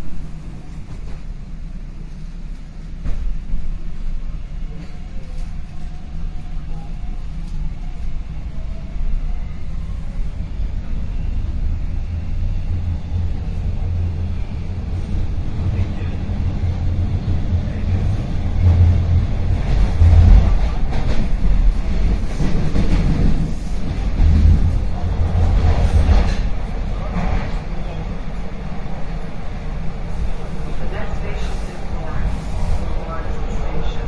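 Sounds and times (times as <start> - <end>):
train rumbling on rails: 0.0 - 34.0.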